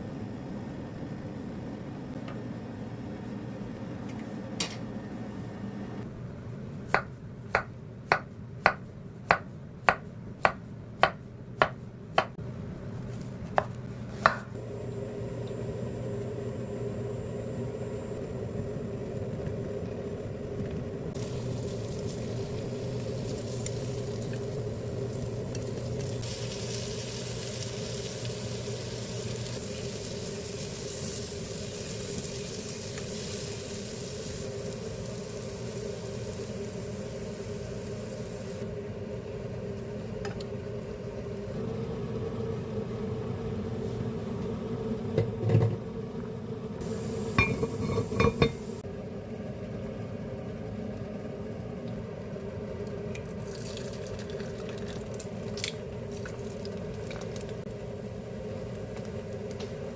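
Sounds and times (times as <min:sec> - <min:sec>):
food sizzling in a frying pan: 0:21.2 - 0:38.6, 0:46.8 - 0:48.8.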